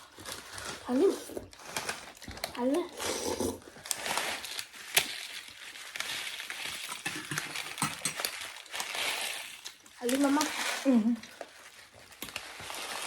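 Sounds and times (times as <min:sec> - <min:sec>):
slurping and chewing: 0:02.9 - 0:03.8.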